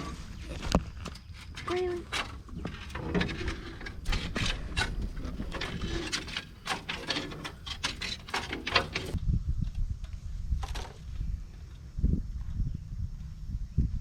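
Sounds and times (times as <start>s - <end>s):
irregular clicks and knocks: 1.0s - 9.2s.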